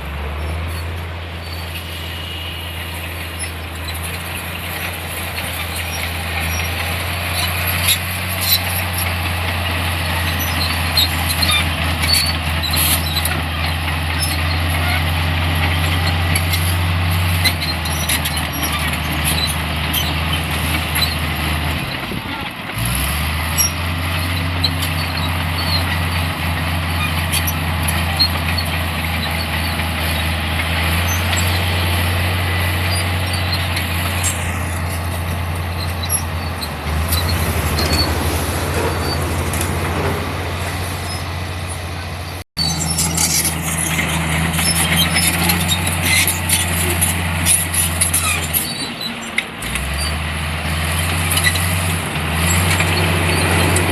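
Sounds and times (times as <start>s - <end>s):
heavy diesel engine running: 0.0s - 53.9s.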